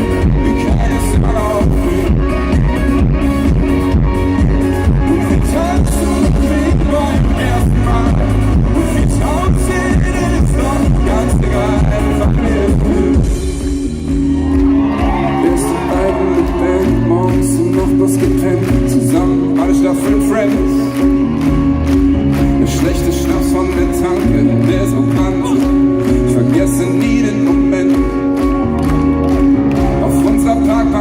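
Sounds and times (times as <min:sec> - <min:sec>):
person singing: 0:00.0 - 0:13.6, 0:15.0 - 0:21.2, 0:22.4 - 0:31.0
pop-rock band playing: 0:00.0 - 0:31.0.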